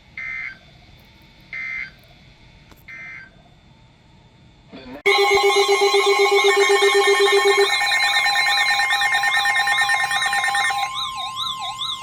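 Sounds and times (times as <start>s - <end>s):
fast warbling siren: 5.1s - 12.0s
low pulsing beep: 5.1s - 12.0s
low wailing siren: 5.1s - 12.0s
steady alarm tones: 5.1s - 12.0s.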